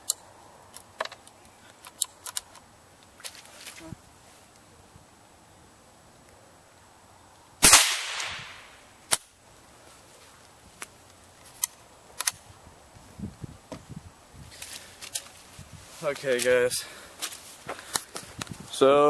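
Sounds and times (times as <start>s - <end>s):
rifle clicks: 0.0s - 2.7s, 11.5s - 12.4s
rifle shot with echo: 7.6s - 9.2s.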